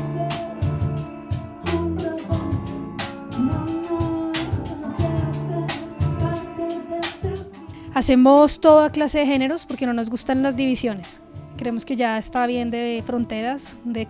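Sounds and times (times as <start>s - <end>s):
bass notes: 0.0s - 8.9s, 10.4s - 11.9s
plucked guitar-like part: 0.0s - 8.9s
steady drum beat: 0.0s - 9.0s, 11.4s - 14.0s.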